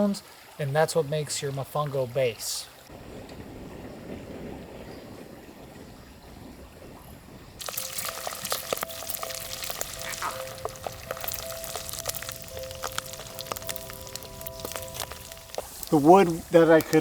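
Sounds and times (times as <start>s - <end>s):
fat frying in hot oil: 7.6s - 17.0s
soft background music: 7.6s - 17.0s.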